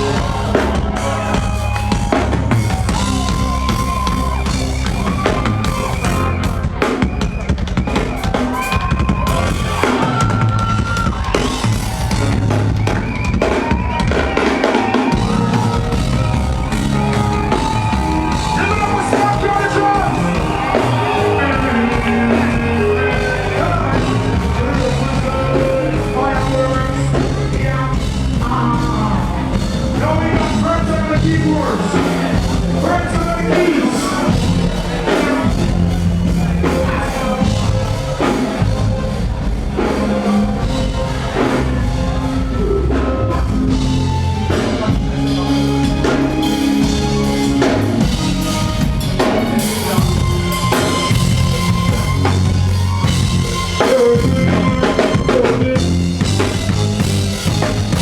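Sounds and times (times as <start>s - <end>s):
bass groove: 0.0s - 58.0s
drum kit: 0.0s - 58.0s
live reggae band playing: 0.0s - 58.0s
lead melody with sliding notes: 13.9s - 58.0s.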